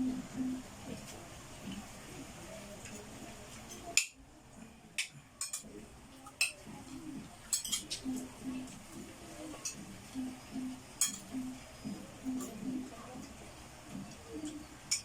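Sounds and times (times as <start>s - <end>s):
faint voices: 0.0s - 15.0s
cutlery clinking on plates: 5.0s - 6.6s, 7.4s - 8.2s, 11.0s - 11.5s, 14.4s - 15.0s.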